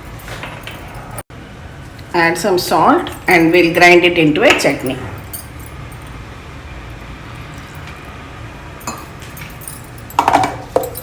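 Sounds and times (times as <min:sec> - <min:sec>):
low background hum: 0:00.0 - 0:11.0
light kitchen clinks: 0:08.8 - 0:11.0.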